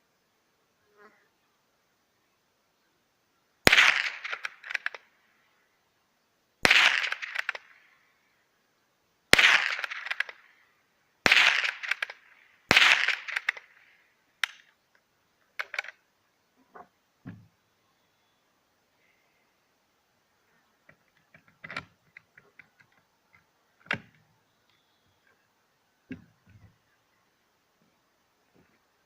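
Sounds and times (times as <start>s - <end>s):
rifle shots: 3.6s - 5.0s, 6.6s - 7.7s, 9.3s - 10.4s, 11.2s - 13.8s.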